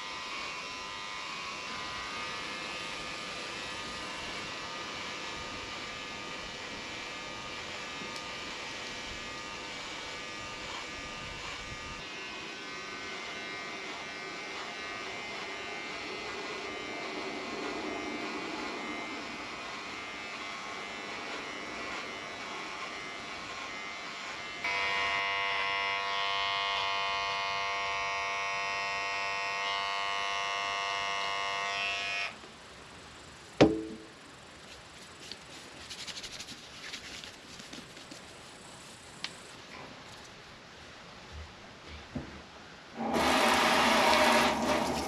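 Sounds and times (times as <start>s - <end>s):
electric shaver buzzing: 0.0s - 32.5s, 43.0s - 45.0s.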